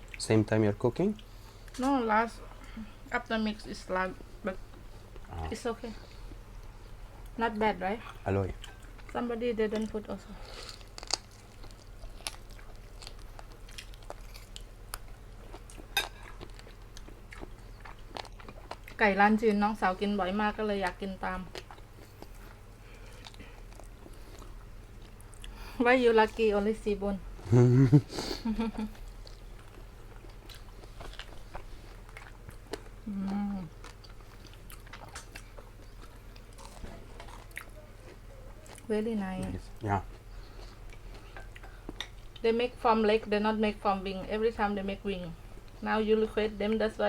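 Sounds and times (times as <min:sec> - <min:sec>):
faint low hum: 0:00.0 - 0:47.0
chewing and biting food: 0:10.6 - 0:19.0, 0:21.5 - 0:25.6, 0:28.9 - 0:33.1, 0:33.7 - 0:42.4
person humming: 0:27.4 - 0:28.8, 0:33.1 - 0:33.7.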